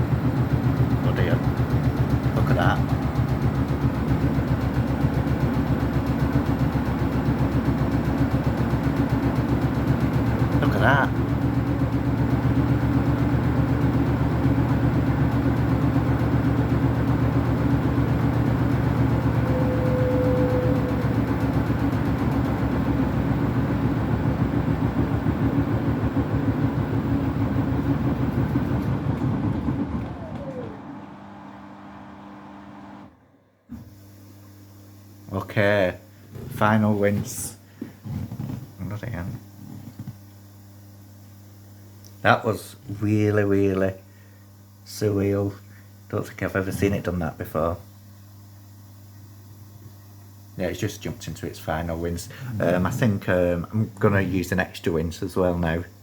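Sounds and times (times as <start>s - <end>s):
washing machine drum pulsing: 0.0s - 32.5s.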